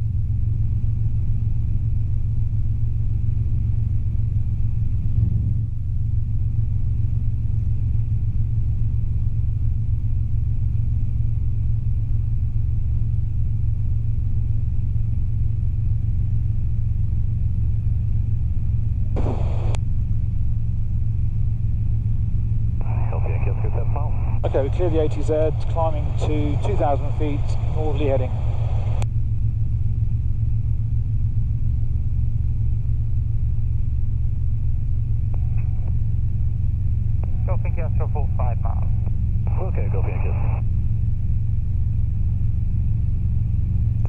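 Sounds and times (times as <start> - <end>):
helicopter engine and rotor drone: 0.0 - 44.0
burst of noise with sharp click: 19.2 - 19.8.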